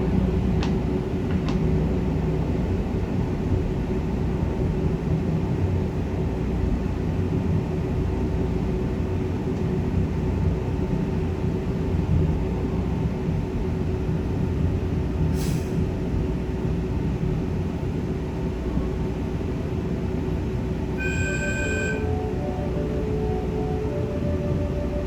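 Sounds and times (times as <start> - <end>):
constant hum: 16.2 - 25.0.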